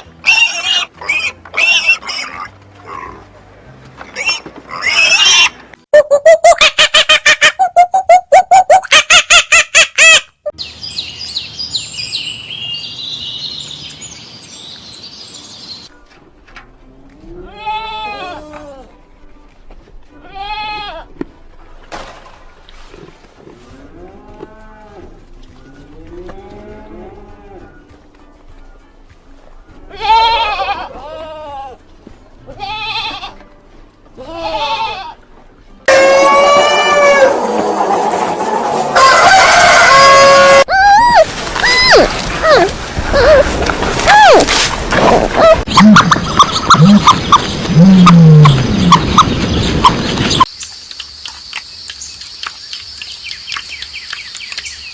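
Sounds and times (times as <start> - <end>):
goat bleating: 17.2 - 18.9, 20.2 - 21.1, 29.9 - 31.8, 32.4 - 33.4, 34.2 - 35.2
rooster crowing: 35.9 - 40.7
small birds chirping: 45.4 - 54.9.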